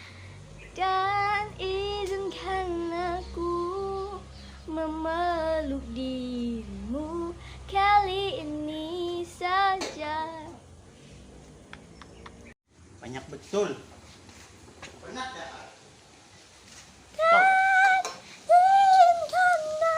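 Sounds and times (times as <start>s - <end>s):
woman singing with vibrato: 0.7s - 10.6s, 17.1s - 19.9s.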